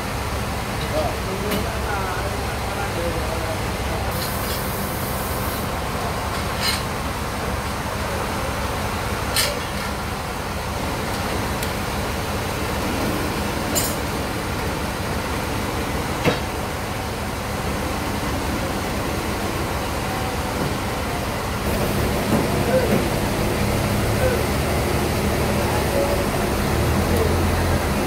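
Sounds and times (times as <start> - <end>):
band sawmill running: 10.0 - 28.0.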